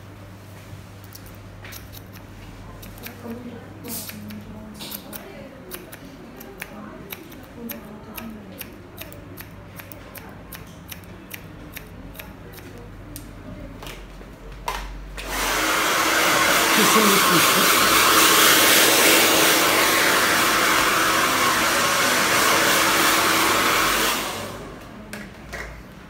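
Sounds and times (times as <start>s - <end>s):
scissors snipping hair: 1.0s - 13.3s
hair dryer blowing: 15.2s - 24.8s.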